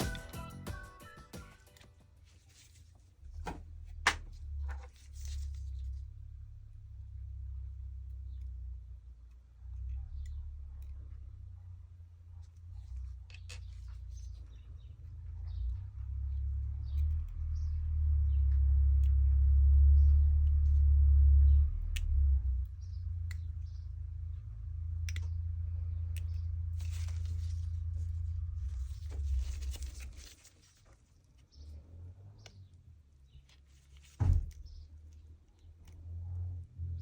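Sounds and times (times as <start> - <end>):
rubbing and rustling: 0.0 - 6.2, 26.8 - 31.6
low hum: 0.0 - 31.0.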